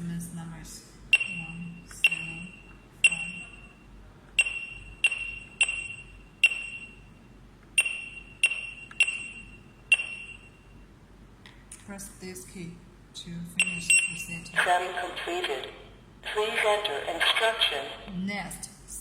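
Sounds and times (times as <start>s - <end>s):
keypad beeping: 1.1s - 3.7s, 4.4s - 7.0s, 7.8s - 10.6s, 13.6s - 14.2s.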